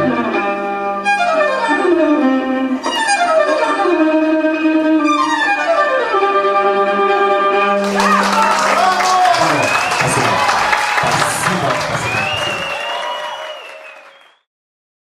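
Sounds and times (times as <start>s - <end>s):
backing track: 0.0s - 14.0s
applause and cheering: 7.8s - 14.5s.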